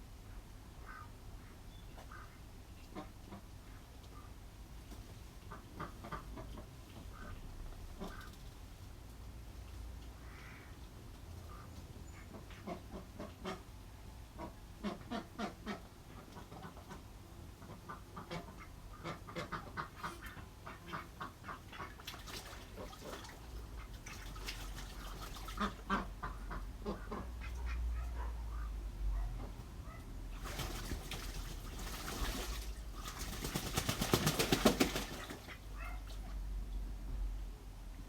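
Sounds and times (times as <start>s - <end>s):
duck-like quacking calls: 14.4s - 15.9s, 17.6s - 22.0s, 25.5s - 28.7s.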